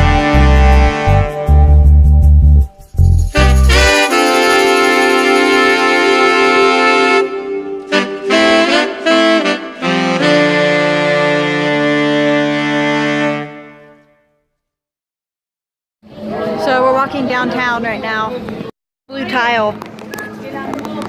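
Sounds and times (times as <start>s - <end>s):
saxophone and brass music: 0.0s - 14.2s.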